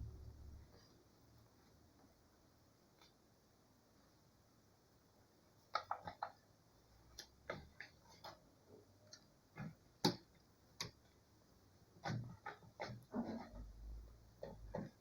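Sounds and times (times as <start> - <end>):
small clicks and taps: 5.7 - 6.5, 7.1 - 8.4, 9.0 - 11.2.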